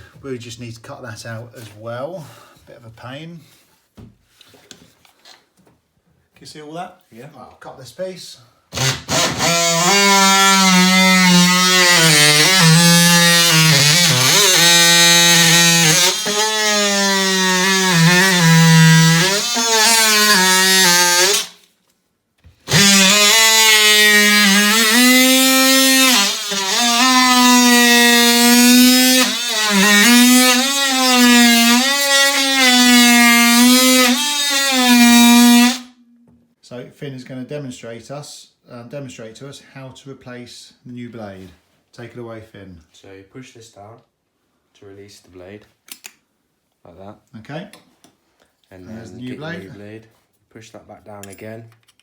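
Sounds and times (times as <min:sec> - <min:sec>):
oscillating multi-tool cutting wood: 0:08.8 - 0:21.6, 0:22.7 - 0:35.9.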